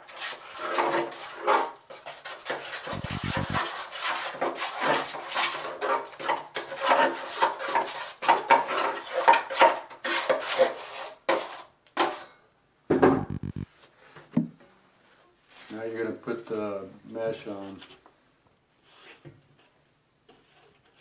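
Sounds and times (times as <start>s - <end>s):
drywall knife scraping compound: 0.0s - 12.2s.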